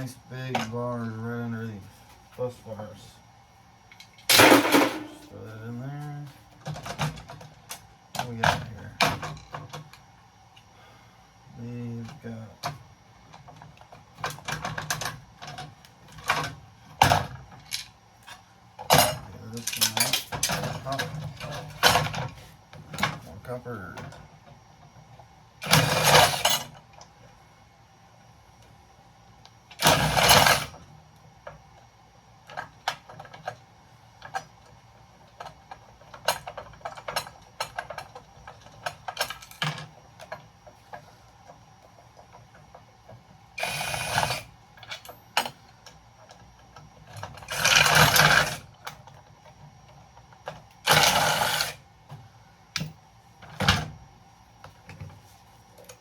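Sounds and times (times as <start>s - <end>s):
power driver whirring: 43.6s - 44.5s.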